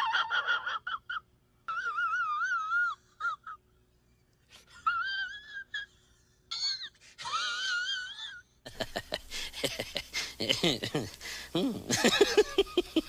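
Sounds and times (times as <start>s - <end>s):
high-pitched comic wailing: 1.7s - 3.5s, 6.5s - 8.4s.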